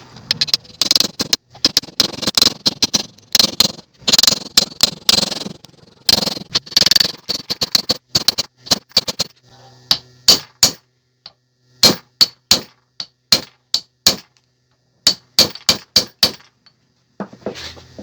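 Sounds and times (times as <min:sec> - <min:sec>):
hammer striking metal: 0:09.9 - 0:10.8, 0:11.8 - 0:14.3, 0:15.1 - 0:16.4.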